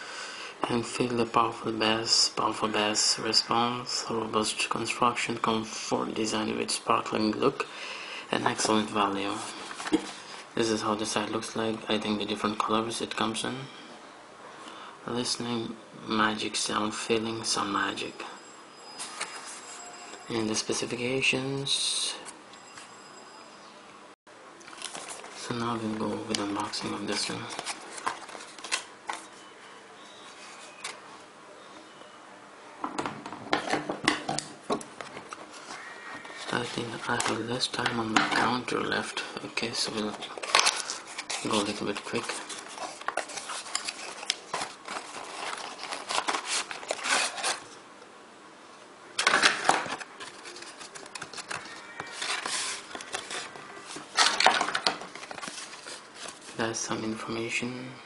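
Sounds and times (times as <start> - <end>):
box being opened and handled: 9.5 - 10.4, 24.7 - 29.5, 33.0 - 38.6, 39.8 - 47.8, 49.2 - 56.6
packaging rustling and clicking: 24.6 - 25.5, 26.3 - 29.4, 39.9 - 47.8, 49.2 - 56.6.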